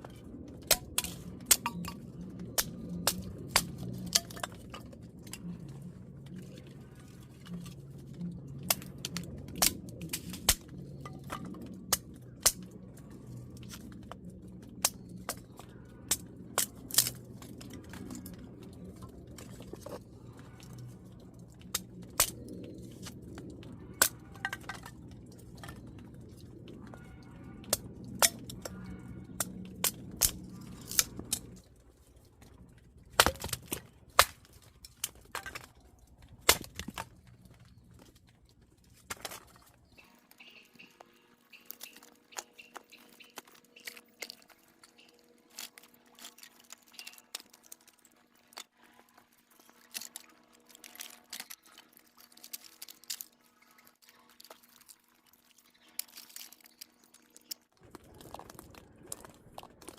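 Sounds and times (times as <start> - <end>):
steady low hum: 0.0 - 47.5.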